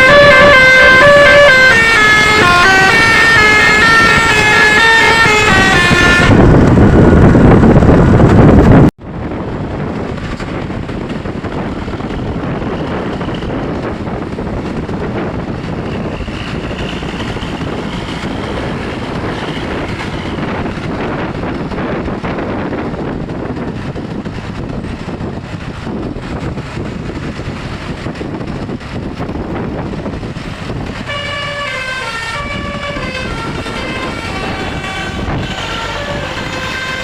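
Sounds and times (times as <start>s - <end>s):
multi-tone bus horn melody: 0.0s - 7.2s, 31.0s - 37.0s
steady rushing noise: 1.5s - 37.0s.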